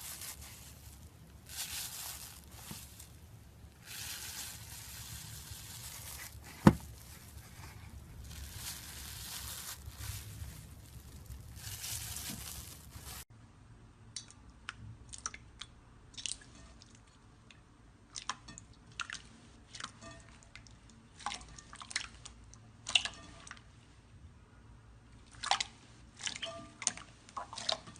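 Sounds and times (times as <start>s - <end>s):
slime squishing: 0.0s - 13.2s.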